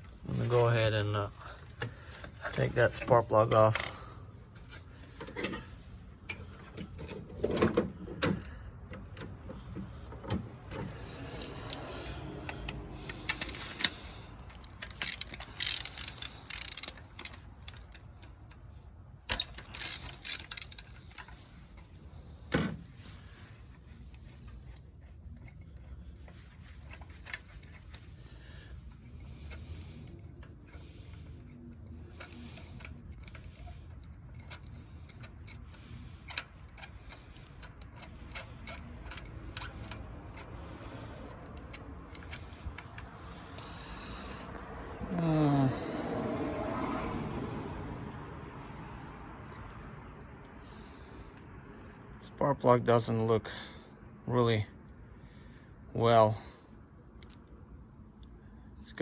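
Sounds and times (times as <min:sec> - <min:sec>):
hand ratchet clicking: 0:10.3 - 0:18.6, 0:19.3 - 0:21.5, 0:24.1 - 0:43.2.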